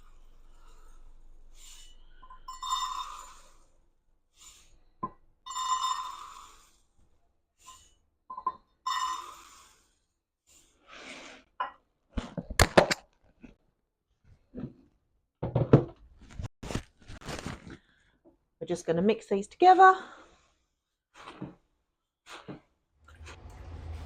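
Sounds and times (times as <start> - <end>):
bowl ringing: 1.8 - 3.7, 5.5 - 6.5, 8.3 - 9.3.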